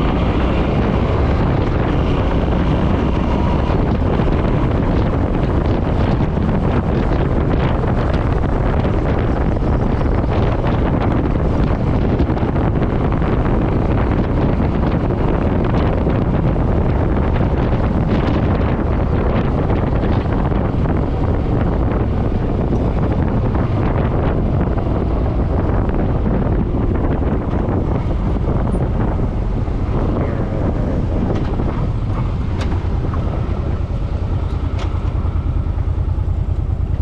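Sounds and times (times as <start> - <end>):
wind buffeting microphone: 0.0 - 37.0.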